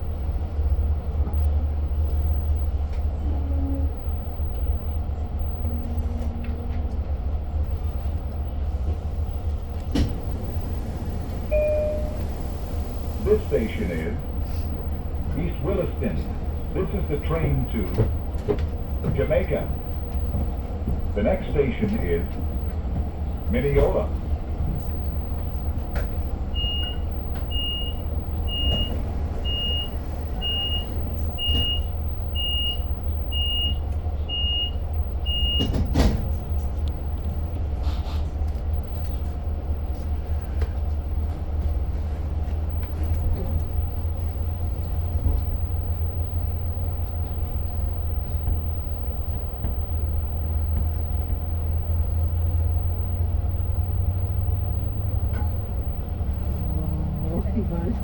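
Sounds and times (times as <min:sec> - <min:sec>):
diesel train interior rumble: 0:00.0 - 0:58.0
high warning beeps: 0:11.5 - 0:18.1, 0:24.8 - 0:35.8.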